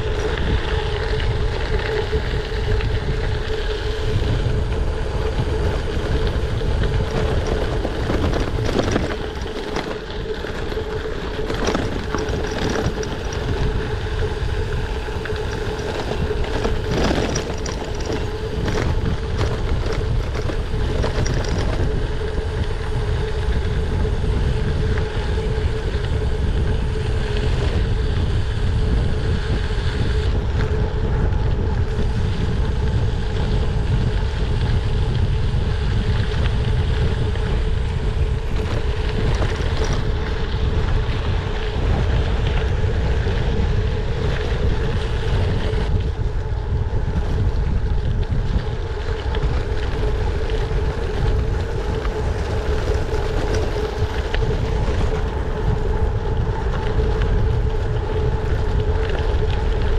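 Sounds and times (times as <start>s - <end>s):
bike tyres rolling on gravel: 0.0s - 59.9s
wind on microphone: 0.0s - 59.9s
knocks and rattles from bumps: 11.4s - 13.8s, 15.4s - 21.9s.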